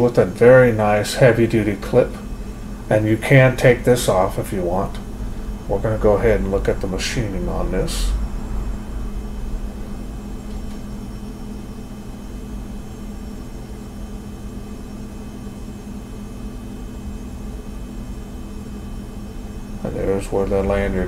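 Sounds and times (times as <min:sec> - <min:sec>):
low mechanical hum: 0:00.0 - 0:21.0.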